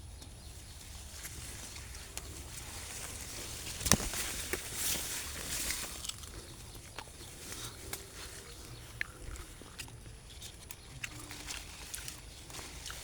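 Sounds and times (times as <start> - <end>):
rustling: 0.8 - 13.0.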